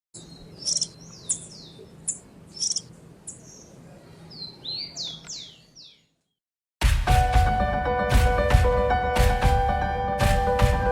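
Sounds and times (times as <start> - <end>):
canary singing: 0.2 - 6.1.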